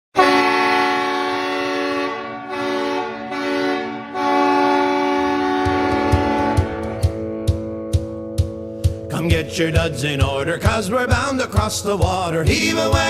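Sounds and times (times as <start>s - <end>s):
air horn goal horn: 0.2s - 8.0s
steady drum beat: 5.2s - 13.0s.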